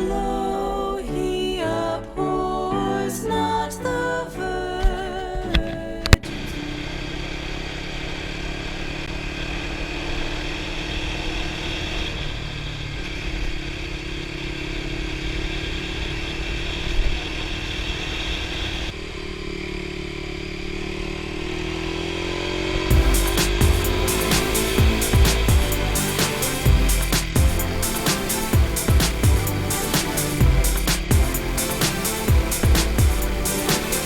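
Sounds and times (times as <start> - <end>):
road noise: 6.1 - 34.0
motorcycle engine running: 18.9 - 34.0.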